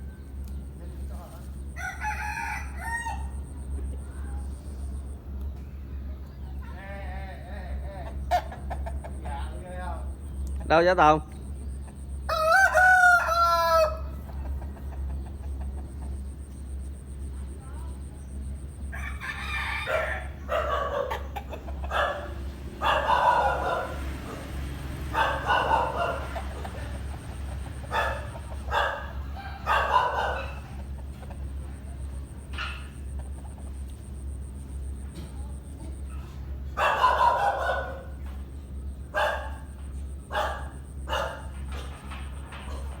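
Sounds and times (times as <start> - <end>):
roosters crowing: 1.3 - 4.0, 6.6 - 17.3, 17.9 - 35.4, 36.0 - 43.0
dog barking: 19.9 - 27.0, 27.9 - 30.9, 32.5 - 33.1, 36.1 - 38.3, 39.1 - 41.8.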